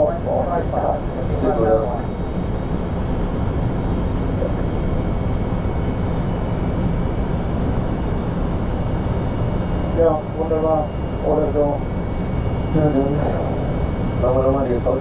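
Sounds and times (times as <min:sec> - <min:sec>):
cockpit airflow rush: 0:09.6 - 0:15.0.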